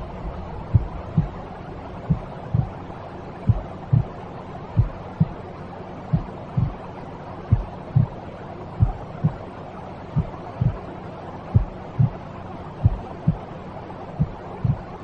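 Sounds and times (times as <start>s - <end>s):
slow heartbeat thumps: 0.0s - 2.8s, 3.5s - 4.2s, 4.8s - 5.4s, 6.1s - 6.8s, 7.5s - 8.2s, 8.8s - 9.4s, 10.2s - 10.8s, 11.6s - 12.2s, 12.8s - 13.4s, 14.2s - 14.9s
white noise hiss: 0.0s - 15.0s.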